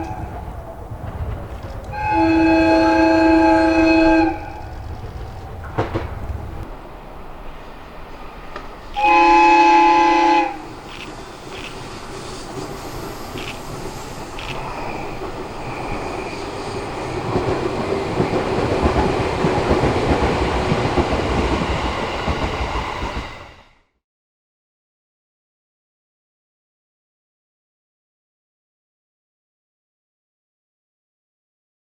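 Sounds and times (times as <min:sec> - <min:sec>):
train running noise: 0:00.0 - 0:23.8
train air horn blast: 0:01.9 - 0:04.7, 0:08.9 - 0:10.9.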